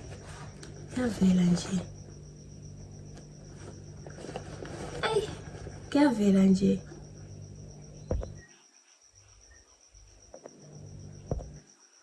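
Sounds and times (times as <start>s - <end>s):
low hum: 0.0s - 8.5s, 10.5s - 11.6s
cricket trilling: 0.0s - 12.0s
soft knocks: 8.0s - 8.4s, 11.3s - 11.6s.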